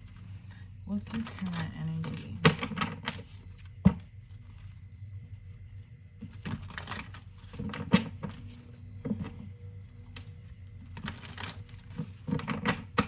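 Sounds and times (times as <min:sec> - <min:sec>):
cards shuffling clicks: 0:06.2 - 0:09.4.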